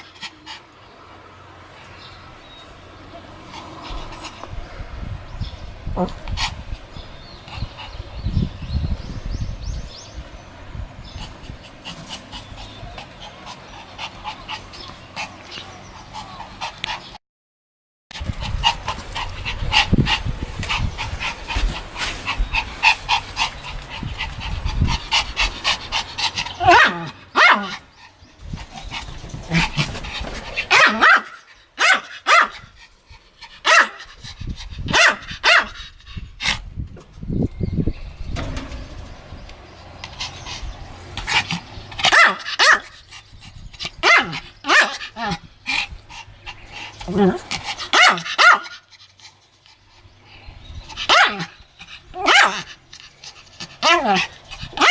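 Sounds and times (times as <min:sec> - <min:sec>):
small dog barking and yipping: 0:18.4 - 0:27.9, 0:29.5 - 0:32.8, 0:33.5 - 0:35.9, 0:41.2 - 0:43.3, 0:43.9 - 0:45.5, 0:46.5 - 0:49.1, 0:50.9 - 0:54.9.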